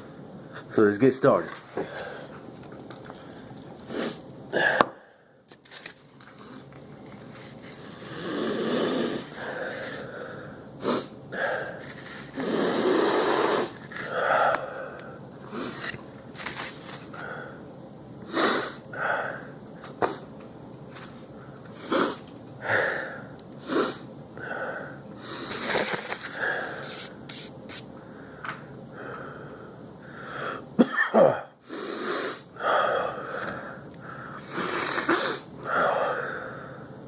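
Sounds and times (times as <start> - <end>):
man sniffing through nose: 3.9 - 4.2, 10.8 - 11.2, 11.8 - 14.1, 18.3 - 18.9, 21.7 - 22.3, 23.6 - 24.1, 25.2 - 27.9, 31.6 - 32.5, 34.4 - 35.5.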